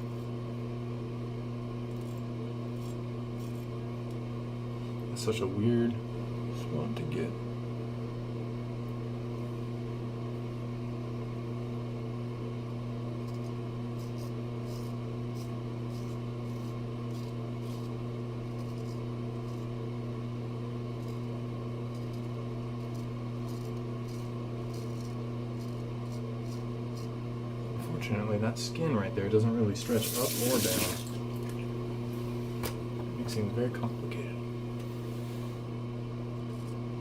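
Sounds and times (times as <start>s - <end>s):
low electrical hum: 0.0s - 37.0s
razor scraping stubble: 13.2s - 19.8s, 21.0s - 27.2s, 29.8s - 31.2s.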